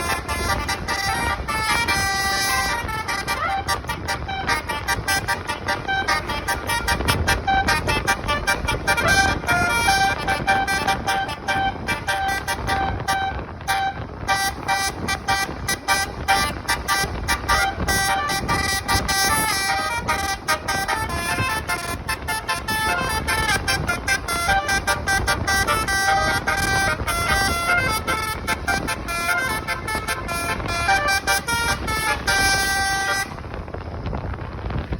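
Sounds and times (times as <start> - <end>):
bus horn playing a melody: 0.0 - 33.8.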